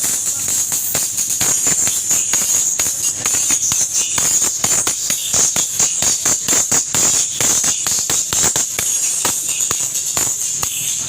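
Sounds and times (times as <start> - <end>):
fast percussion hits: 0.0 - 11.0
music through a sound system: 0.0 - 11.0.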